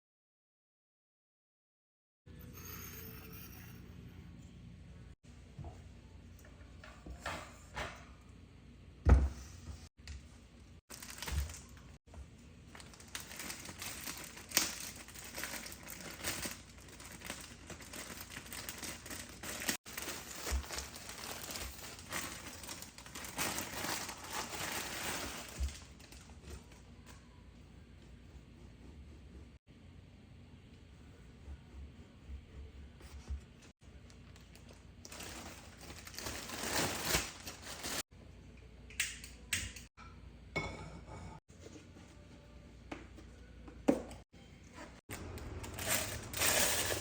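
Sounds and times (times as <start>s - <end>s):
packaging crinkling and rustling: 10.9s - 11.9s, 12.7s - 26.8s, 34.1s - 38.0s, 45.1s - 47.0s.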